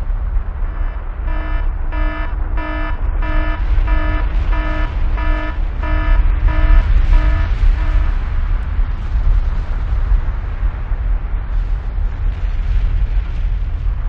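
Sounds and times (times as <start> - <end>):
deep explosion rumble: 0.0 - 14.0
electronic alarm beeping: 0.7 - 8.1.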